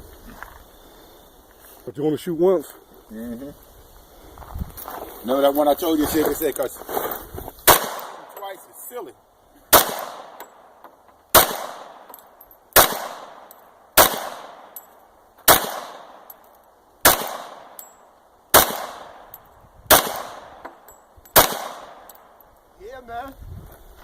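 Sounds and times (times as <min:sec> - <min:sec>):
pistol shots: 0:07.6 - 0:08.4, 0:09.7 - 0:10.6, 0:11.3 - 0:14.8, 0:15.4 - 0:16.3, 0:17.0 - 0:22.3.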